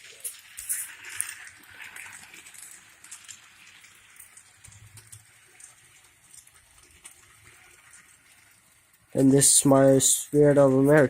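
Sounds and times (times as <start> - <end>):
toy train clicking on track: 0.0 - 8.6.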